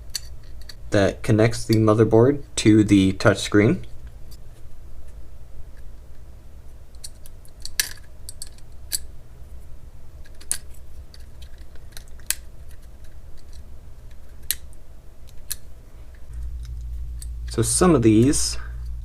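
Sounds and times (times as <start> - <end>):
steady low hum: 0.0 - 19.0
smartphone parts clicking: 10.2 - 17.6.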